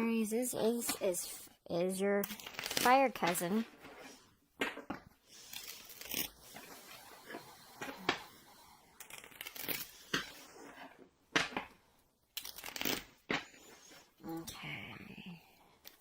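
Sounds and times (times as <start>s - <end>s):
cards shuffling: 12.4s - 13.8s.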